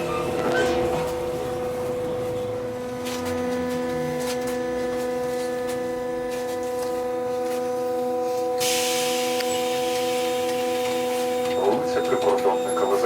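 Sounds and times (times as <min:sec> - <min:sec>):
hiss: 0:08.6 - 0:11.3.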